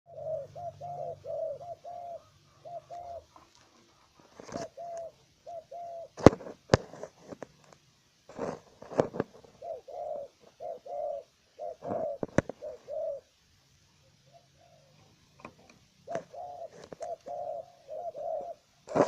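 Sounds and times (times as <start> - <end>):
dove cooing: 0.1 - 7.4, 8.4 - 19.0
brief rustling: 3.3 - 5.1.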